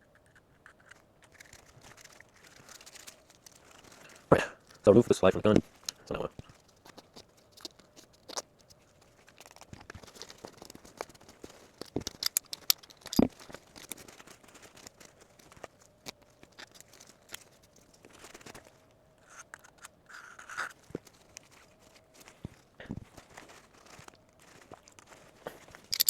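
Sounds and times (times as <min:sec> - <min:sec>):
pistol parts clicking and tapping: 0:11.8 - 0:13.3.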